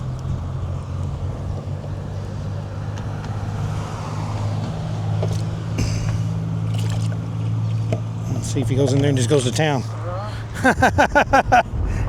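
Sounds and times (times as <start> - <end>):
engine humming: 0.0 - 12.0
rushing noise: 9.9 - 12.0.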